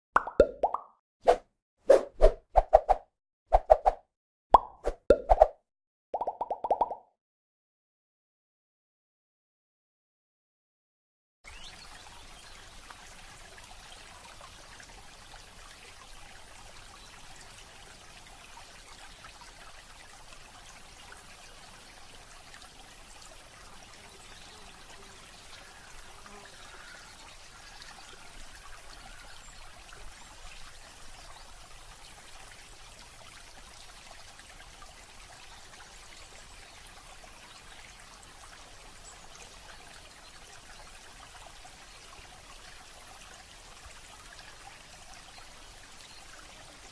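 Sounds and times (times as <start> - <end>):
running water trickling: 11.5 - 46.9.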